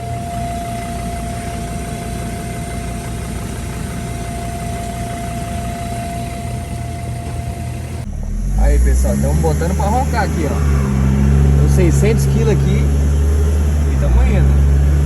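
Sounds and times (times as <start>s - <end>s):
thin constant whine: 0.0s - 15.0s
vehicle engine idling: 0.0s - 15.0s.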